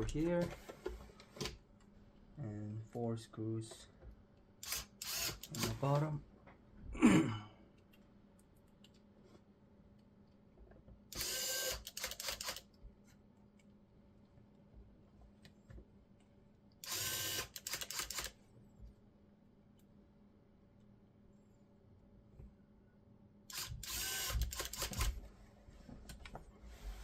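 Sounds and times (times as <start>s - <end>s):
electric screwdriver driving screws: 4.6s - 5.8s, 11.2s - 12.6s, 16.8s - 18.3s, 23.5s - 25.2s.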